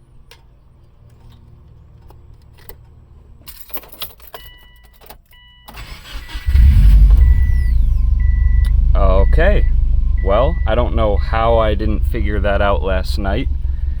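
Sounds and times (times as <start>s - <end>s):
car keys jangling: 3.4s - 5.4s
dashboard warning chimes: 4.4s - 12.8s
engine starter turning: 5.7s - 14.0s.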